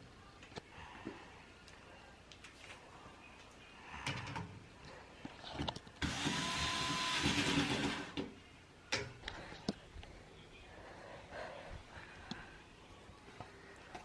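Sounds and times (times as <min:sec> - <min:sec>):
electric screwdriver whirring: 0:06.0 - 0:08.2.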